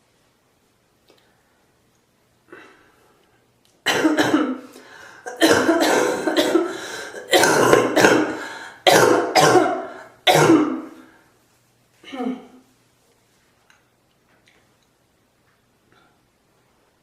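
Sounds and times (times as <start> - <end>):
person coughing harshly: 3.9 - 11.0.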